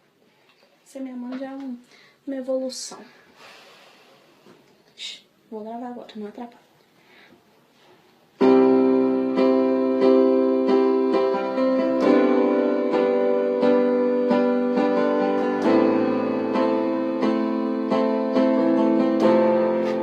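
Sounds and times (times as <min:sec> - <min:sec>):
keyboard piano chords: 0:08.4 - 0:20.0.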